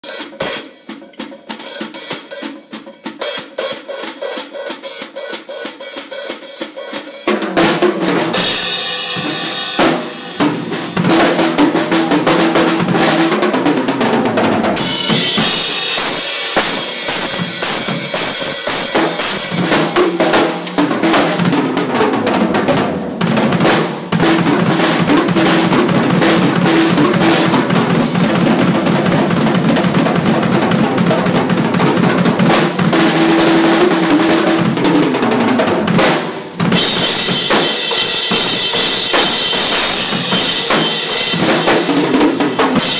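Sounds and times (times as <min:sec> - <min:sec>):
drum kit played fast: 0:00.0 - 0:42.9
cymbals crashing: 0:08.2 - 0:11.6, 0:14.8 - 0:21.4, 0:36.7 - 0:42.9.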